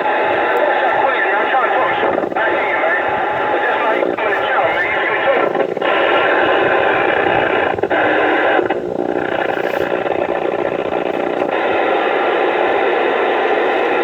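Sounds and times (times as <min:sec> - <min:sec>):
radio static: 0:00.0 - 0:14.0.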